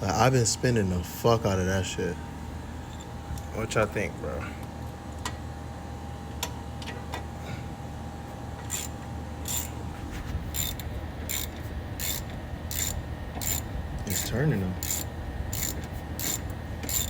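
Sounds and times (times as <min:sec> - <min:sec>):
ratchet wrench clicking: 0:08.7 - 0:09.7, 0:10.5 - 0:17.0.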